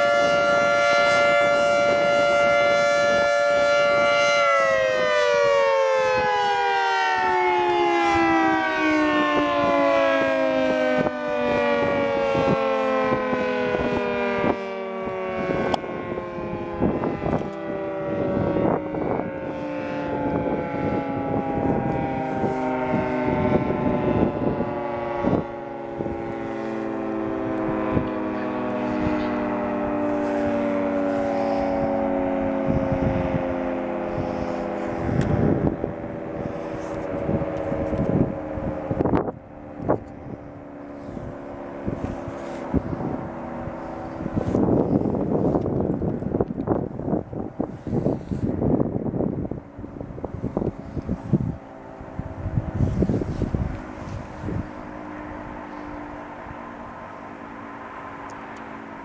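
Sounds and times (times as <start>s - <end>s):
warning siren winding down: 0.0s - 59.0s.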